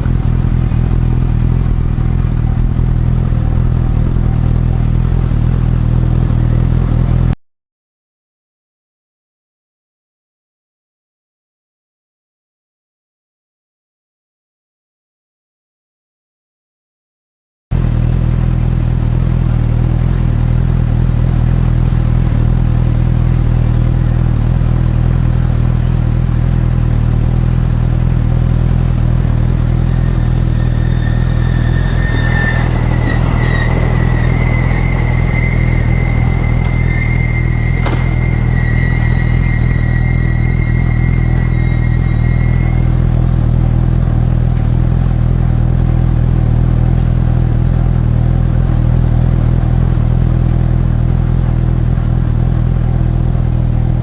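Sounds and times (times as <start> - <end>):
motorcycle engine running: 0.0 - 7.4, 17.8 - 54.0
high thin whine: 28.7 - 43.6.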